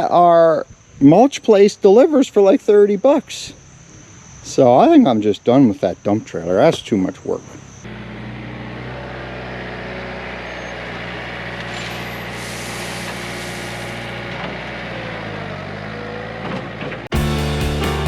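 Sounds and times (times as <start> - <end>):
backhoe engine running: 7.6 - 18.0.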